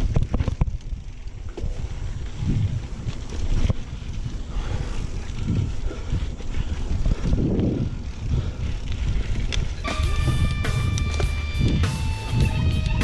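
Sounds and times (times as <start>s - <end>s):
bike knocking and rattling: 0.0s - 13.0s
wind rumbling on microphone: 0.0s - 13.0s.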